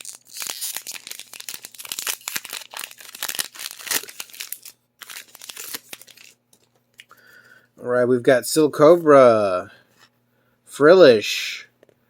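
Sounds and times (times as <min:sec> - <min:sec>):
foil wrapper crinkling and tearing: 0:00.0 - 0:06.4.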